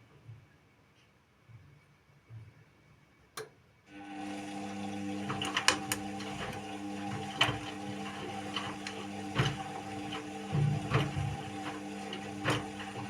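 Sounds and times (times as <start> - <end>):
washing machine motor hum: 3.9 - 13.0
washing machine clicks and knocks: 5.2 - 13.0.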